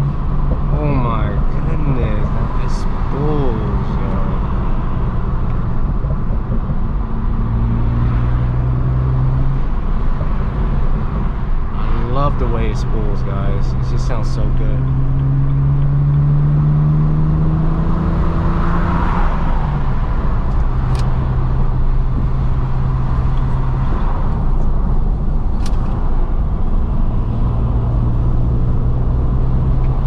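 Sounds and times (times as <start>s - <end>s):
car engine running: 0.0s - 30.0s
road rumble: 0.0s - 30.0s.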